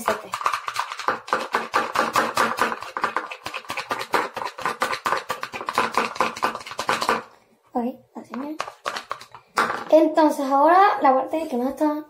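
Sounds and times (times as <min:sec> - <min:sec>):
utensil scraping in a bowl: 0:00.1 - 0:07.2.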